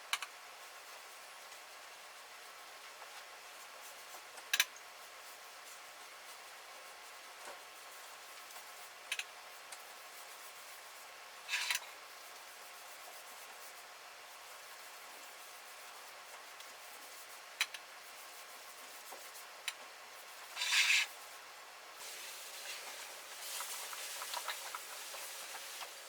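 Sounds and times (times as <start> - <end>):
faint room hum: 0.0 - 26.0
rubbing strokes: 20.1 - 21.4, 22.0 - 26.0.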